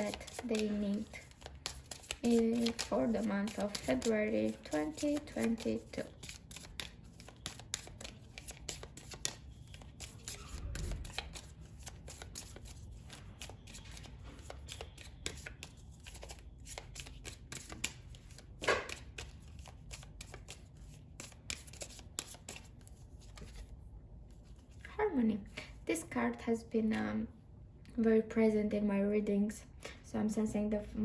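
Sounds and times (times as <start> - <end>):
cards shuffling: 0.0 - 23.7.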